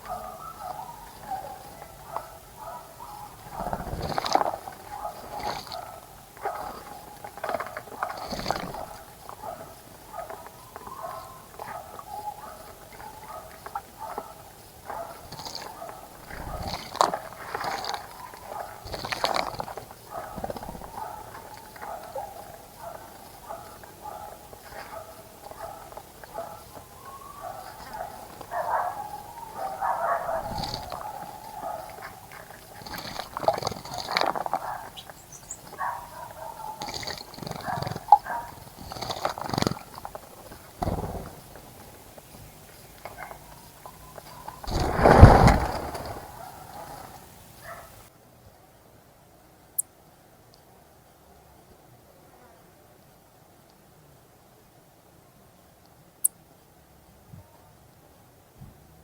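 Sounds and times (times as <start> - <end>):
birds splashing in water: 44.4 - 47.2.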